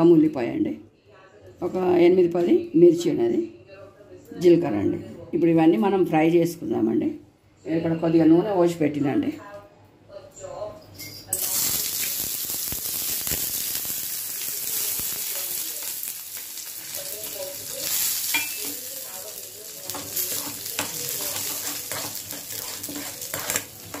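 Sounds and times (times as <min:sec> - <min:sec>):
oil sizzling in a frying pan: 0:11.3 - 0:24.0.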